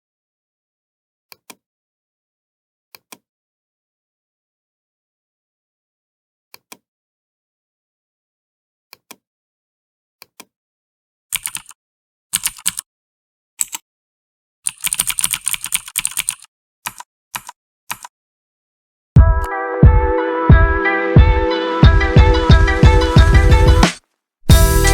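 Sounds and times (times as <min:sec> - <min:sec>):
mechanical keyboard typing clicks: 0:11.4 - 0:11.8, 0:12.4 - 0:12.8, 0:13.6 - 0:13.8, 0:14.7 - 0:18.1.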